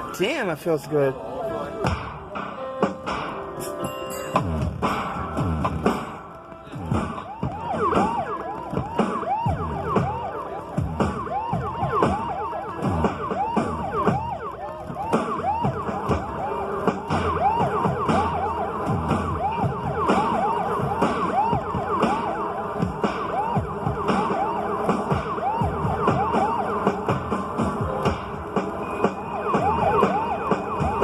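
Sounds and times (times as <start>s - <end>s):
synthesizer siren swoops: 6.9s - 31.0s.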